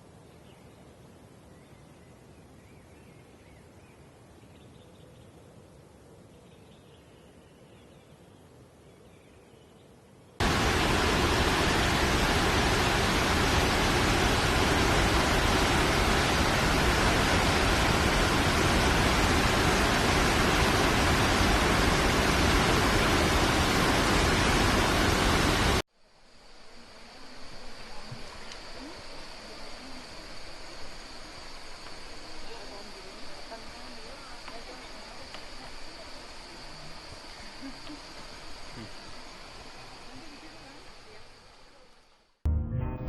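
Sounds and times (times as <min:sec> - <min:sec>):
waterfall rushing: 0:10.4 - 0:25.8.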